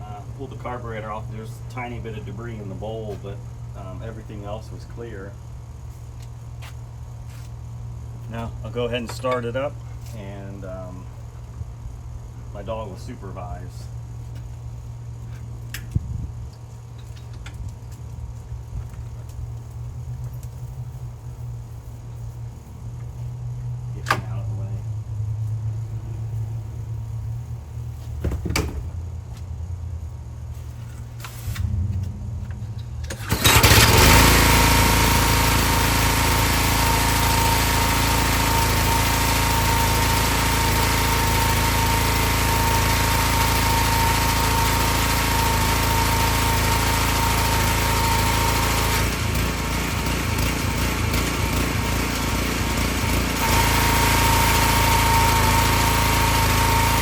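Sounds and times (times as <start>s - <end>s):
small engine running with whine: 30.7s - 57.0s
low rumble: 31.4s - 33.1s.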